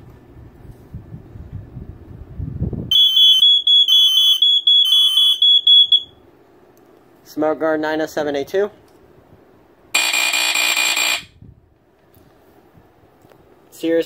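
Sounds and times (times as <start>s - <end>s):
smoke alarm beeping: 2.9s - 6.2s, 10.0s - 11.3s.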